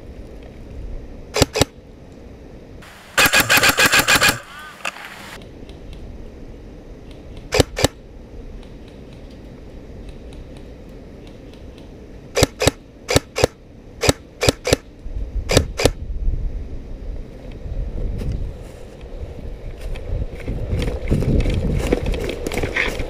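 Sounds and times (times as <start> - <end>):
airsoft gun shots: 1.4 - 1.7, 2.8 - 5.0, 12.4 - 14.8.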